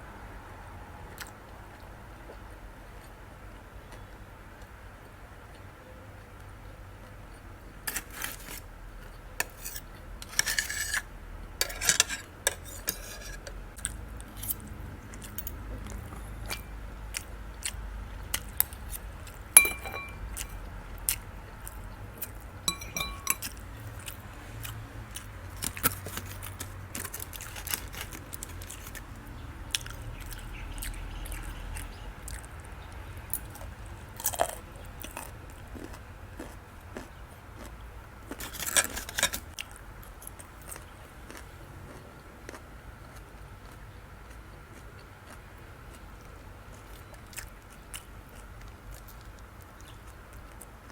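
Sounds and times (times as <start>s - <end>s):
cutlery clinking on plate: 11.6s - 13.6s, 19.6s - 20.6s, 22.7s - 23.6s
chewing and biting food: 12.8s - 50.9s.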